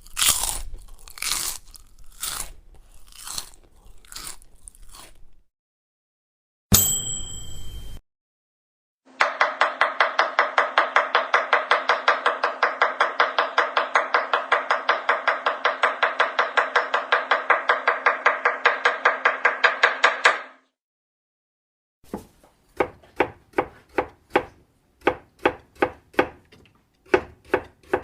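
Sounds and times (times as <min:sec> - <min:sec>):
knife chopping on cutting board: 0:22.1 - 0:28.0.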